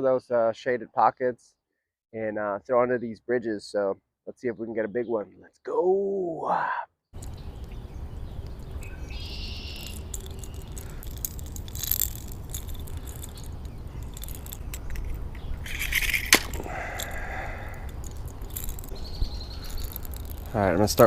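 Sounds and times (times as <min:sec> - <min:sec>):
small clicks and rattles: 0:07.2 - 0:07.8, 0:09.6 - 0:21.0
bird chirp: 0:07.2 - 0:11.1, 0:12.5 - 0:21.0.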